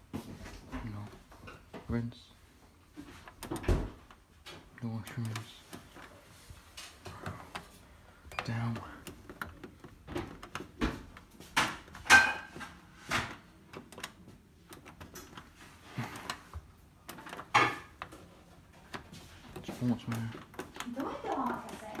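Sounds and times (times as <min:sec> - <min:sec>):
knocks and clicks on washing machine: 0:08.7 - 0:15.5, 0:18.8 - 0:22.0.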